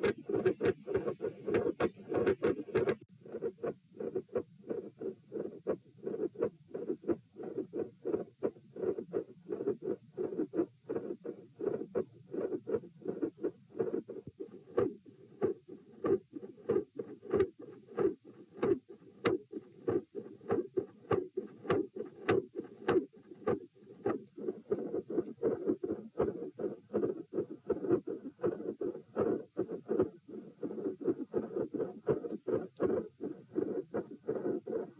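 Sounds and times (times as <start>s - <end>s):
heartbeat lub-dub: 0.0s - 34.9s.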